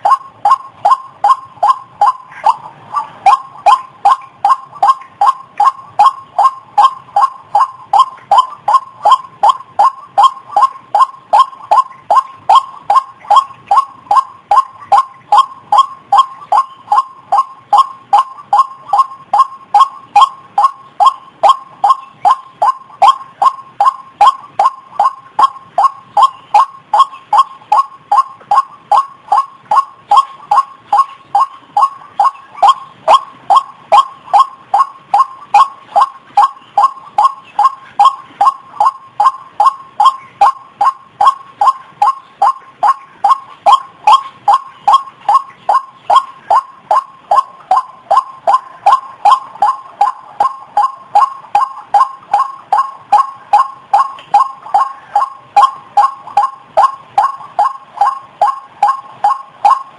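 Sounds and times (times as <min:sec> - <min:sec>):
waterhen calling: 0:00.0 - 0:59.9.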